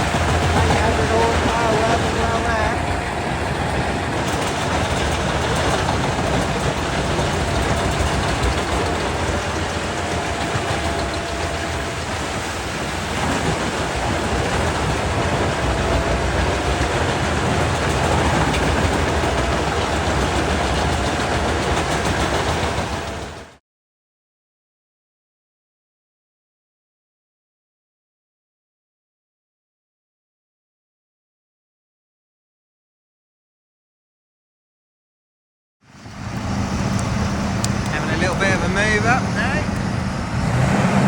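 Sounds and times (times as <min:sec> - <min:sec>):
wood chipper chewing logs: 0:00.0 - 0:23.5, 0:36.0 - 0:41.0.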